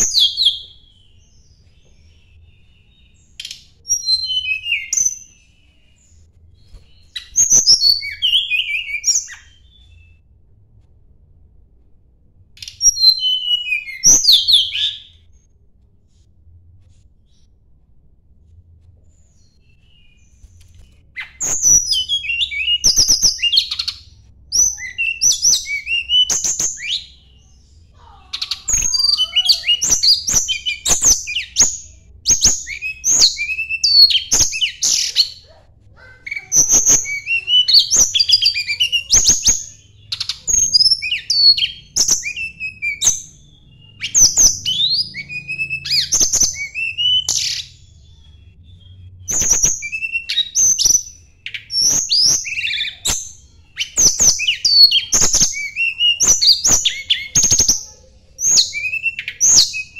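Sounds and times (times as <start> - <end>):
songbird singing chirps and whistles: 0.0 - 10.5, 12.6 - 59.9.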